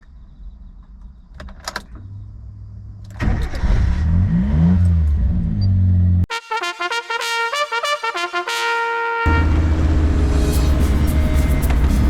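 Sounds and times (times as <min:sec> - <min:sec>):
car engine starting and idling: 0:01.9 - 0:06.3, 0:09.3 - 0:12.0.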